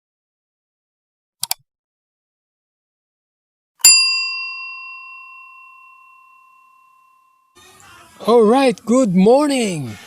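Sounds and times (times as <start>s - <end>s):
bright metallic ding: 3.8s - 7.5s.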